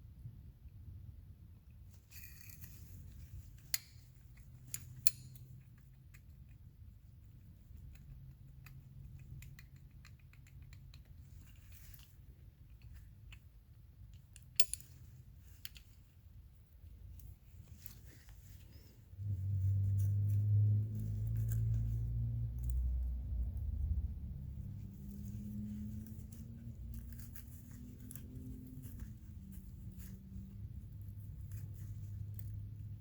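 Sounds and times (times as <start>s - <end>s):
metal parts clicking and tapping: 3.5s - 6.6s, 7.9s - 16.0s
low hum: 16.5s - 33.0s.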